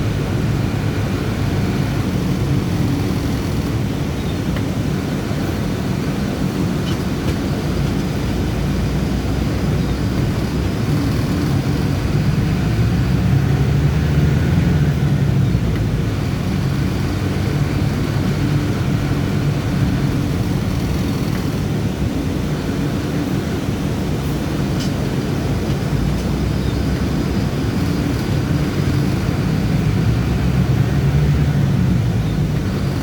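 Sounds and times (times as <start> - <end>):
bus engine drone: 0.0 - 33.0.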